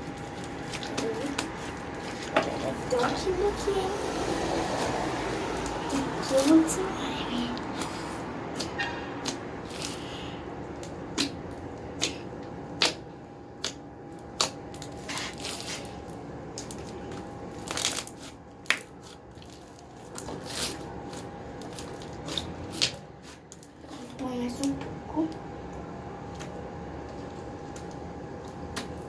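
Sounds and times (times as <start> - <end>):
slime squelching: 7.6 - 23.8.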